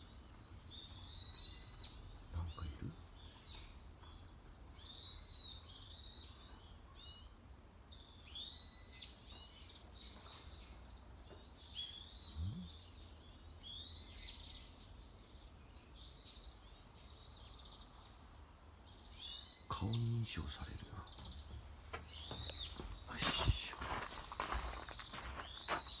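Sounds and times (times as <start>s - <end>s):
bird calling: 19.2s - 26.0s.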